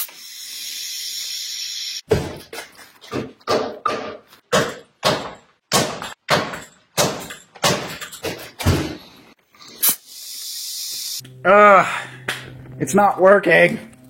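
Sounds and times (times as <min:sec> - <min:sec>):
compressed air hissing: 0:09.6 - 0:11.2.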